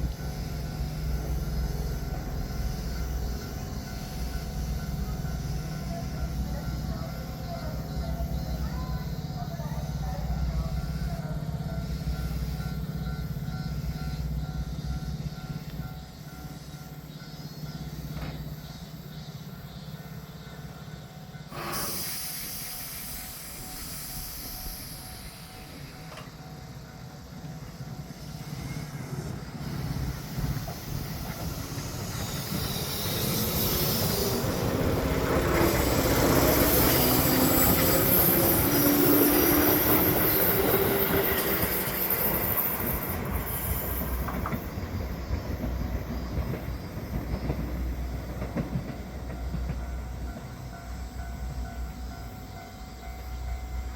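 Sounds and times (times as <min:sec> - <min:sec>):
electric train rumble: 0:00.0 - 0:53.9
train squeal: 0:00.0 - 0:53.9
high hiss: 0:09.8 - 0:48.3.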